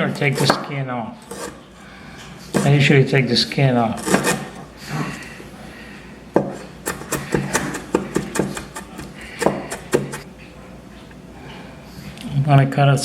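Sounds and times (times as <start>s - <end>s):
knife chopping on cutting board: 0.3s - 0.7s, 4.0s - 4.6s, 6.4s - 10.2s.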